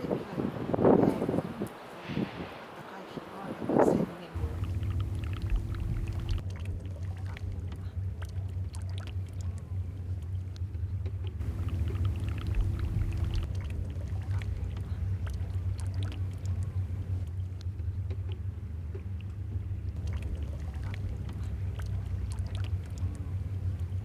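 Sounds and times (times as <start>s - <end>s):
low hum: 4.3s - 24.0s
higher steady tone: 4.4s - 6.4s, 11.4s - 13.5s.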